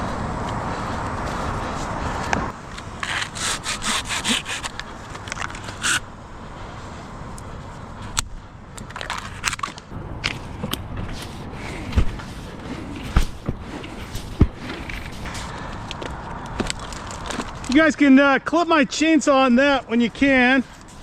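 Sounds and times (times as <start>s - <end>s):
hand saw cutting wood: 2.8s - 4.8s, 5.6s - 6.1s.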